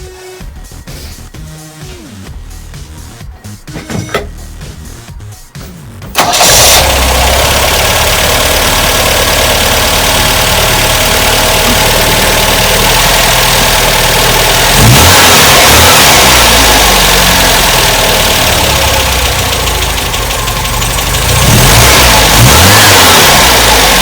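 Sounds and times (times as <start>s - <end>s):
background music: 0.0s - 8.0s
car engine starting and running: 3.6s - 5.0s, 6.0s - 24.0s.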